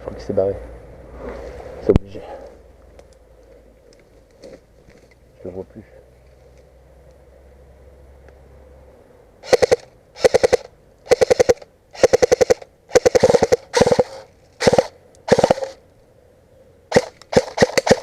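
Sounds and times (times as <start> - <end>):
airsoft gun automatic bursts: 9.4 - 15.8, 16.9 - 18.0.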